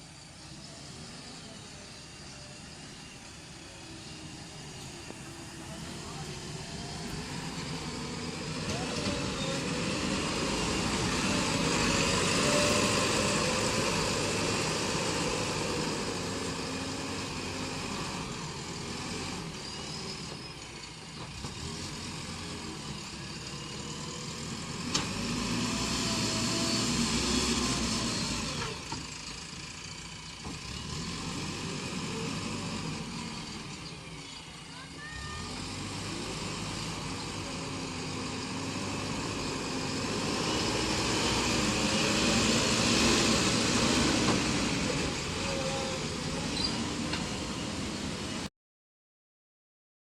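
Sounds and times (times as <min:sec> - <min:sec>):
backhoe diesel engine running: 0:00.0 - 0:48.4.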